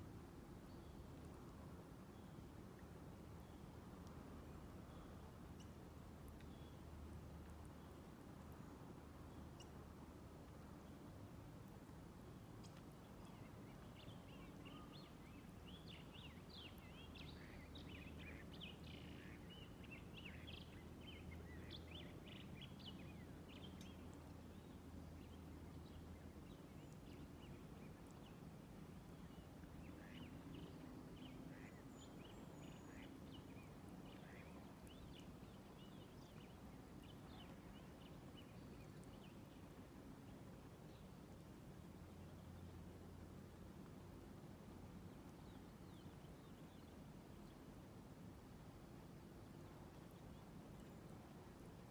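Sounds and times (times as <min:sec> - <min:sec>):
small birds chirping: 0:29.2 - 0:39.6.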